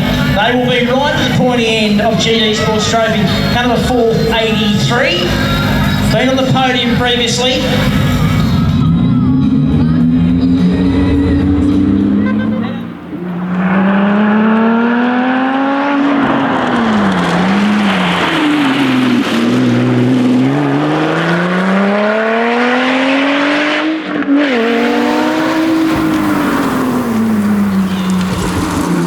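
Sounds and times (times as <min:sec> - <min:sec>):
car engine revving hard: 0:09.5 - 0:29.0.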